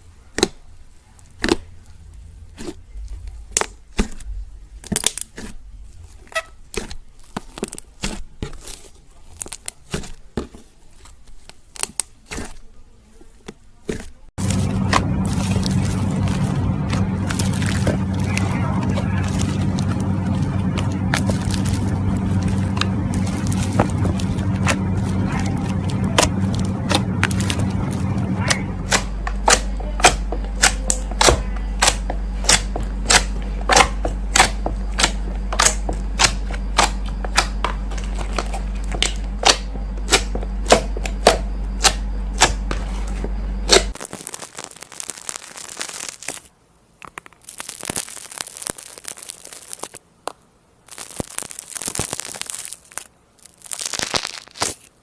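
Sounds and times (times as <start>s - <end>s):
slime crackling: 0.0s - 55.0s
low hum: 14.4s - 44.1s.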